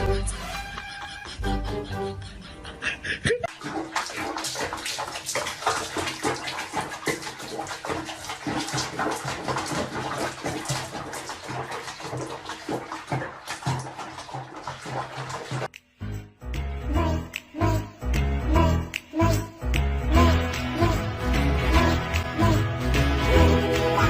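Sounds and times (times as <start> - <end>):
water splashing: 3.4 - 15.8.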